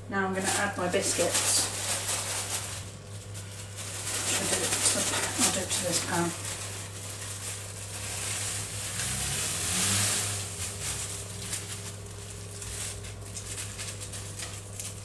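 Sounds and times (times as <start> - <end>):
steady low hum: 0.0 - 15.0
crumbs hissing in butter: 3.2 - 15.0.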